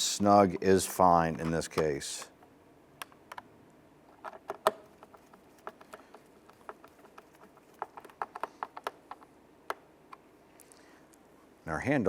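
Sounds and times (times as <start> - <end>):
screwdriver clicking on plastic: 4.2 - 10.2.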